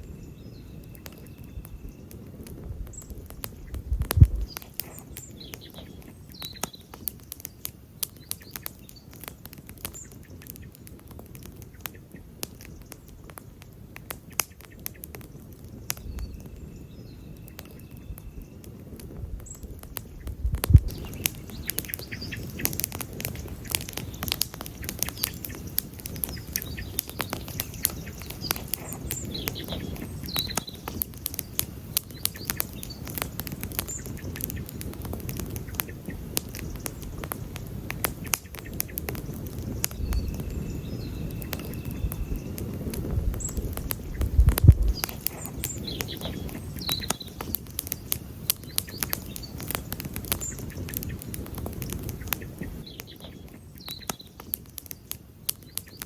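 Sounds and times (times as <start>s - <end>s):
low rush of flame: 0.0s - 55.9s
campfire crackling and popping: 0.0s - 56.0s.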